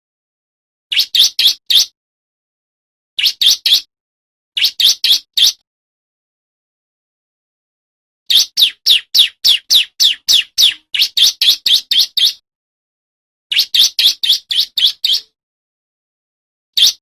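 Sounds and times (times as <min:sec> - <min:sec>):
bird singing sharp high notes: 0:08.3 - 0:12.4, 0:13.5 - 0:15.4.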